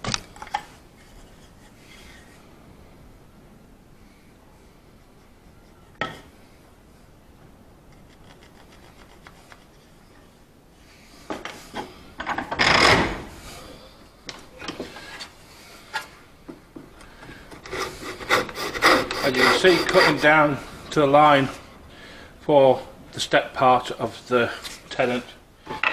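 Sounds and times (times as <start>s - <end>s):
tool scraping wood: 8.0s - 9.8s, 17.3s - 20.6s.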